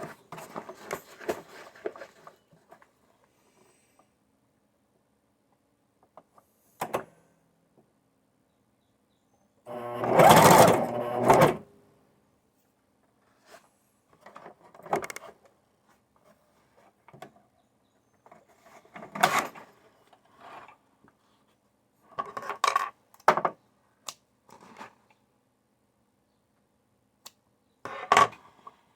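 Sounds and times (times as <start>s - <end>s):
sewing machine running: 9.7s - 11.6s.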